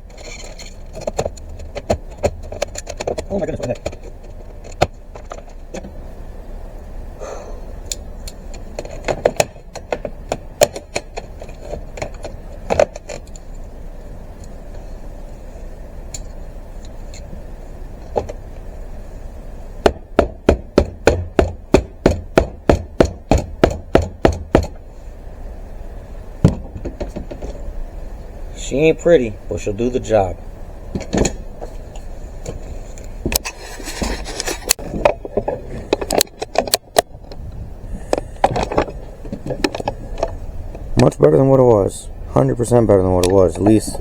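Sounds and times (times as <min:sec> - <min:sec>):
hammer striking nails into wood: 0:19.8 - 0:24.8.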